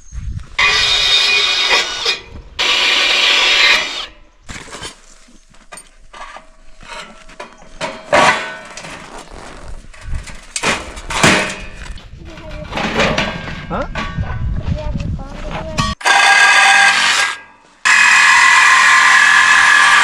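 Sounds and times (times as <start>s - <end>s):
power tool running: 0.6s - 4.1s, 16.0s - 20.0s.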